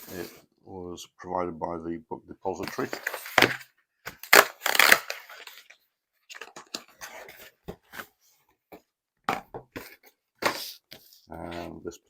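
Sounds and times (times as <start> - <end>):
packaging crinkling and rustling: 4.2 - 6.9.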